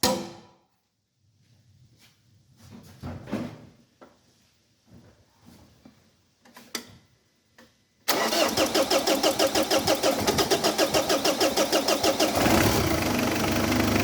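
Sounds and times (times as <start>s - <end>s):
engine cranking and starting: 8.1s - 14.0s.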